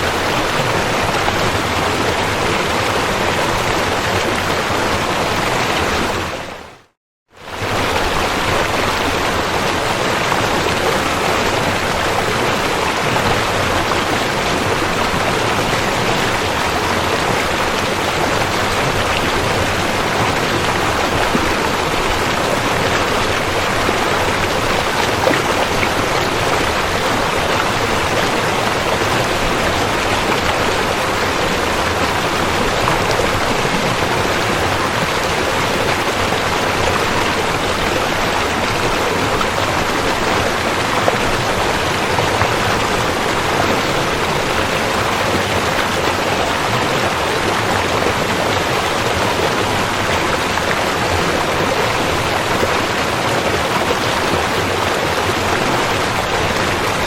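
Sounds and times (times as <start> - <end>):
river water rushing: 0.0 - 6.8, 7.4 - 57.0.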